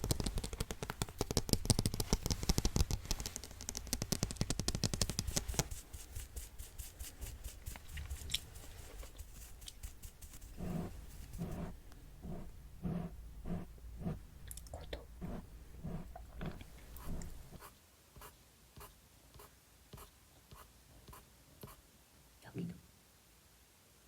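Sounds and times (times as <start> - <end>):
rapid tapping and clicking: 0.0 - 10.7.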